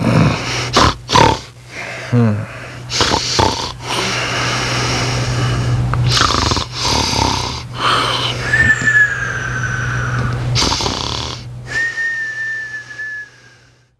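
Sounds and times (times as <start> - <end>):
loud human snoring: 0.0 - 13.6.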